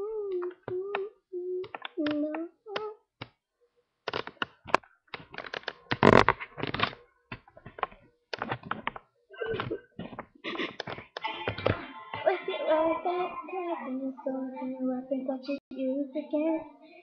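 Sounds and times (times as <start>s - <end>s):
clicks taps and knocks: 0.3s - 2.2s, 4.1s - 11.8s.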